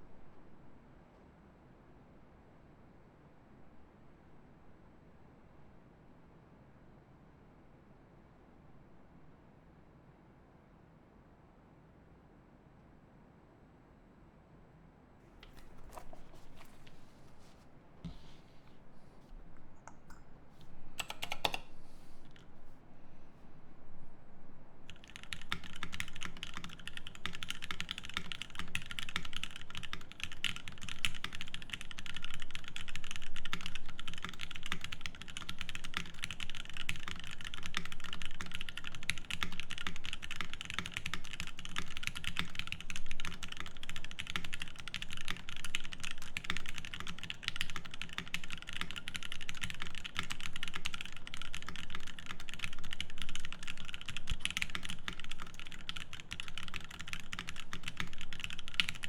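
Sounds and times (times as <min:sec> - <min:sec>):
fast typing on mechanical keyboard: 0:21.0 - 0:22.5, 0:24.9 - 0:59.0.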